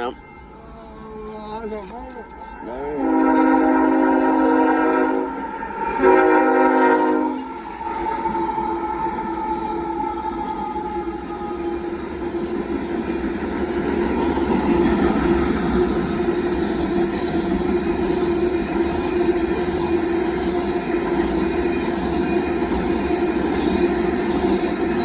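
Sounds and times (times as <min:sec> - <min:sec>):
freight train rolling past: 0:00.0 - 0:25.0
wheels clattering on rails: 0:11.7 - 0:25.0.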